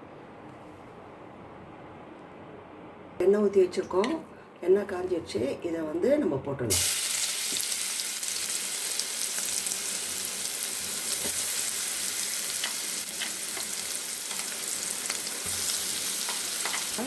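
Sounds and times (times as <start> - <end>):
food sizzling in hot oil: 6.7 - 17.0.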